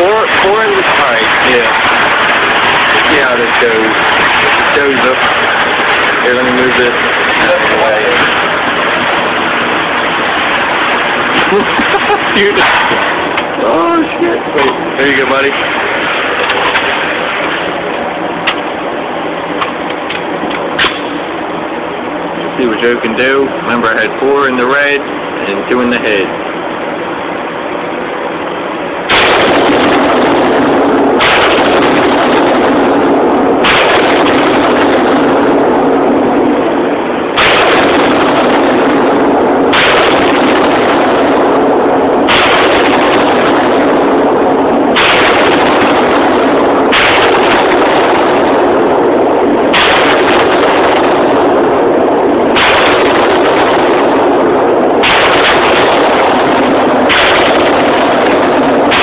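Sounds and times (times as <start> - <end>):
rifle shots: 0.0 - 13.4, 29.1 - 59.0
harsh overloaded noise: 0.0 - 59.0.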